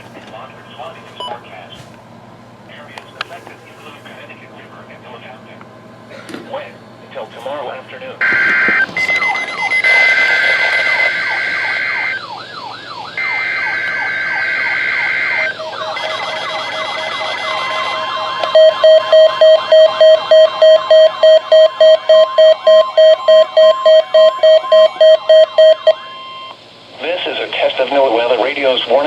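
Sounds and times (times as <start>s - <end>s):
loud pulsing beep: 8.2s - 12.2s, 13.2s - 26.6s
two-tone blasts: 8.2s - 26.6s
steady attention tone: 8.2s - 29.0s
siren-like sweep: 8.3s - 21.0s.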